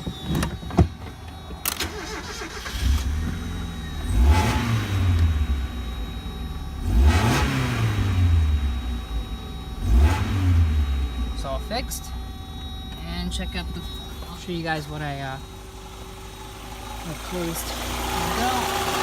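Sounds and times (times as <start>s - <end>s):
car engine accelerating: 1.6s - 12.6s, 13.4s - 19.0s.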